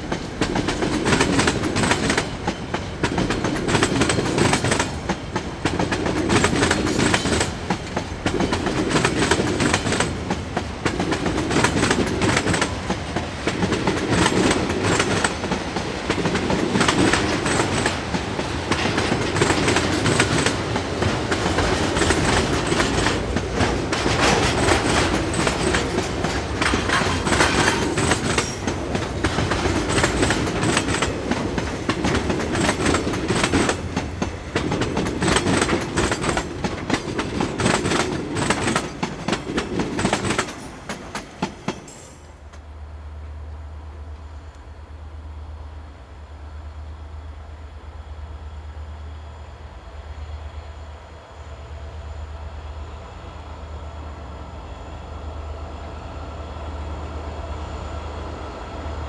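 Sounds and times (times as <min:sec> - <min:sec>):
train wheels clattering on rails: 0:00.0 - 0:42.8.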